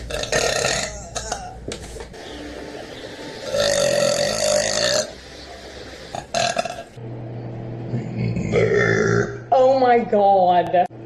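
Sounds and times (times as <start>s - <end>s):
woman burping: 0.0s - 1.6s, 8.2s - 9.4s.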